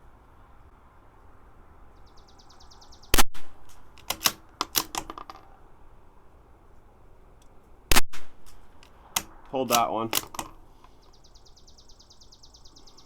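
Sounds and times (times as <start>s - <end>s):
rifle shot: 3.1s - 5.4s, 7.9s - 10.6s
rifle bolt clicking: 3.4s - 5.5s, 7.4s - 11.0s.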